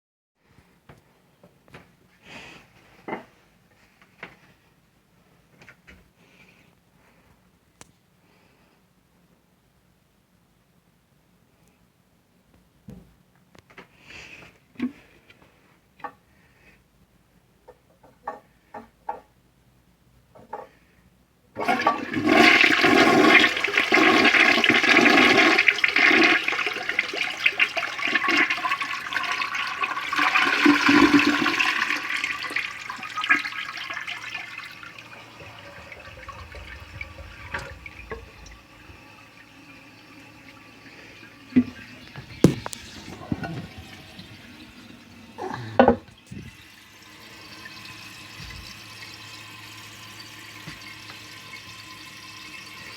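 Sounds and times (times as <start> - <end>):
toilet flushing: 21.6 - 52.9
toilet tank refilling hiss: 21.6 - 52.9
toilet clicks: 42.1 - 43.8.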